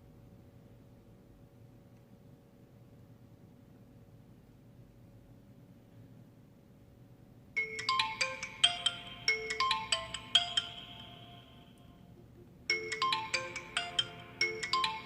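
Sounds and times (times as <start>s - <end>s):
phone ringtone melody: 7.6s - 15.0s.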